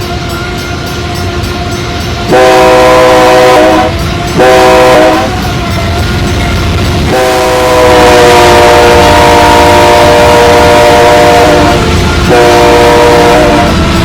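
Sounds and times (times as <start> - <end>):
train rumble: 0.0 - 14.0
locomotive air horn: 2.3 - 5.5, 7.0 - 14.0.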